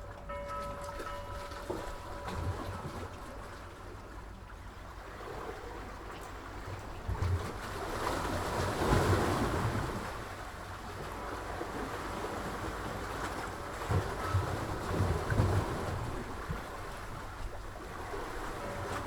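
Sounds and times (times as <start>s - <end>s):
sea waves washing in: 11.1s - 19.0s.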